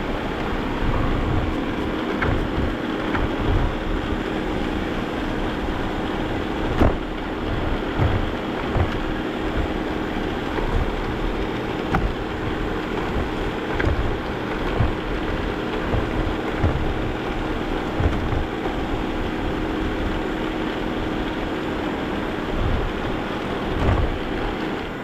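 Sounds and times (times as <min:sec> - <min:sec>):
vacuum cleaner running: 0:00.0 - 0:25.0
sharp knocks: 0:06.4 - 0:17.2.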